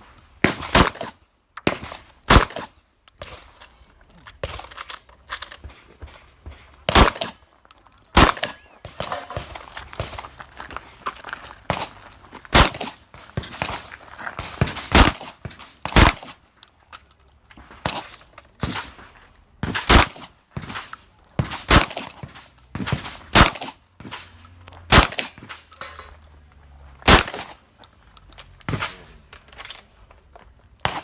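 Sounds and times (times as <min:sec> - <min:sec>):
shotgun shots: 0:00.4 - 0:03.5, 0:05.6 - 0:07.4, 0:08.2 - 0:10.2, 0:12.5 - 0:16.4, 0:19.6 - 0:25.7, 0:27.0 - 0:27.6.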